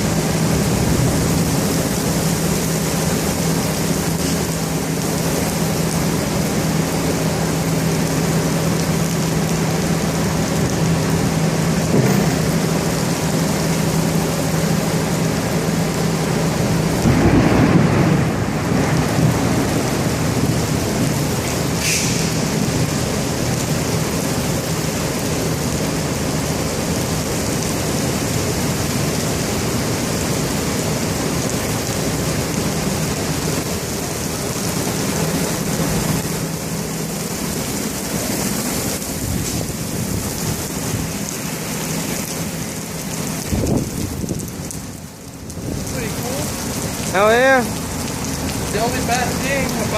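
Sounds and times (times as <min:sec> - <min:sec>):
low rumbling thunder: 0:00.0 - 0:02.6, 0:16.8 - 0:23.8
heavy rain pouring: 0:00.0 - 0:49.9.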